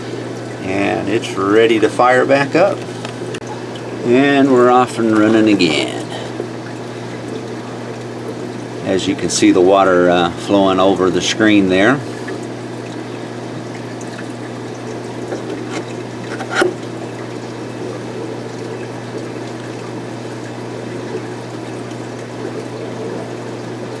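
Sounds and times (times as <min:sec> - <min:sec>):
pump humming: 0:12.1 - 0:17.8.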